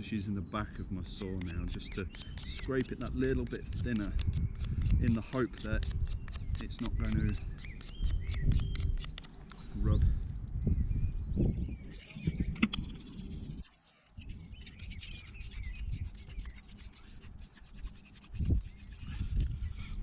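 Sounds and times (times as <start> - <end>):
hand drill wood rubbing: 1.1 - 9.3, 14.5 - 19.6.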